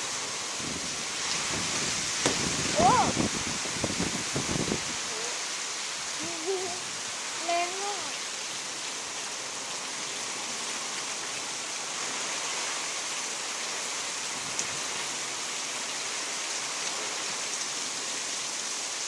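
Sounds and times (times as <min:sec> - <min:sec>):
heavy rain pouring: 0:00.0 - 0:19.0.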